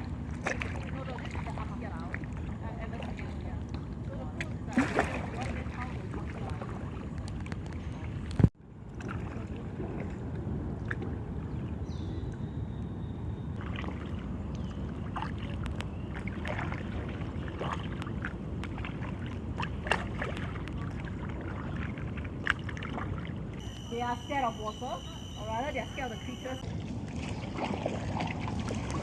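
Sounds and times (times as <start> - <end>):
paddle splashes and drips: 0.0 - 11.9, 13.6 - 29.0
water rushing: 23.0 - 29.0.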